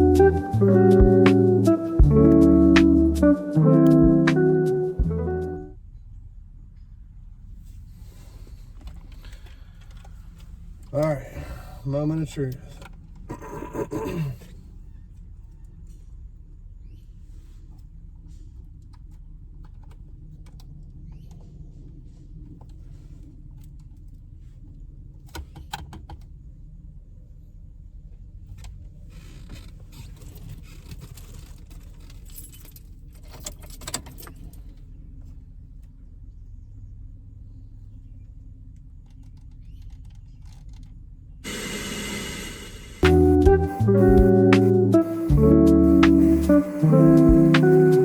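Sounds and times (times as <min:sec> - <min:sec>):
music from car speakers: 0:00.0 - 0:05.6, 0:41.5 - 0:48.0.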